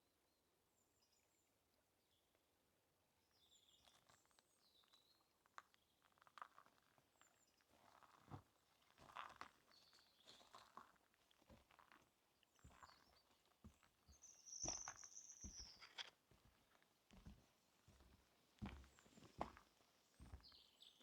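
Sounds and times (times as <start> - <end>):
footsteps on forest path: 8.2 - 21.0.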